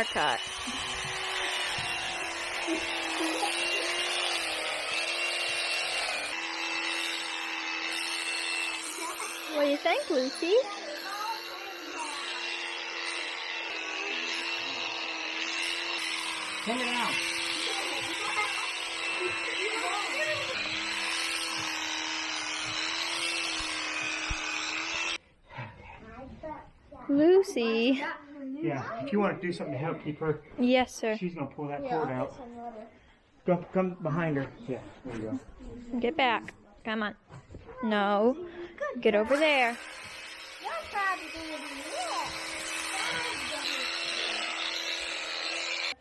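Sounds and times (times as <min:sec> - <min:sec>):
electric sheep shears humming: 0:00.0 - 0:25.2, 0:39.2 - 0:46.0.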